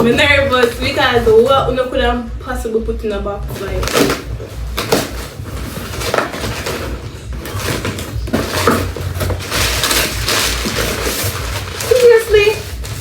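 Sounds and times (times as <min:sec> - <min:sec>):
packaging rustling and tearing: 0:03.5 - 0:13.0.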